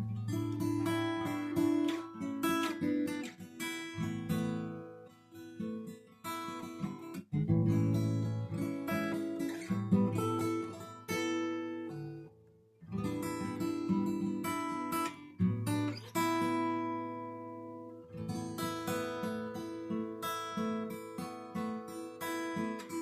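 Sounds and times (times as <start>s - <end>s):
solo guitar playing: 0.0s - 23.0s.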